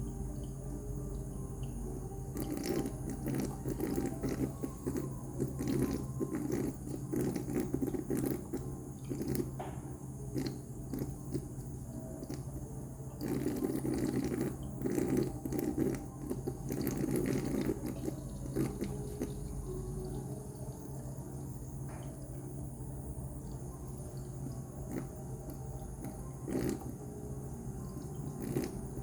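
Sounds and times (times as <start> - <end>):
steady low hum: 0.0 - 29.0
water dripping and splashing: 1.1 - 12.6, 13.2 - 20.1.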